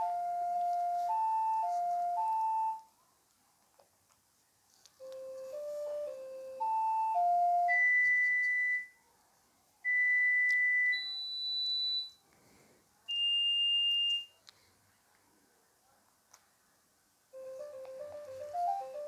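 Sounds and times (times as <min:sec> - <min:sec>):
phone melody: 0:00.0 - 0:02.9, 0:05.0 - 0:08.9, 0:09.9 - 0:12.1, 0:17.4 - 0:19.0
electronic phone beeps: 0:05.1 - 0:09.0, 0:09.9 - 0:12.2, 0:13.1 - 0:14.3.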